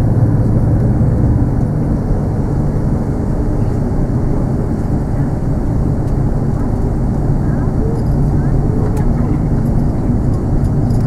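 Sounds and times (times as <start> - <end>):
airliner engines rumbling: 0.0 - 11.0.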